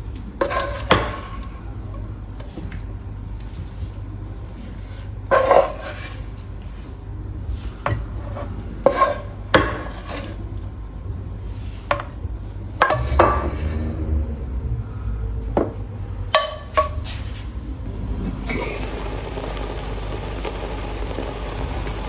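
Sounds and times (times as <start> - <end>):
steady low hum: 17.2 - 22.0.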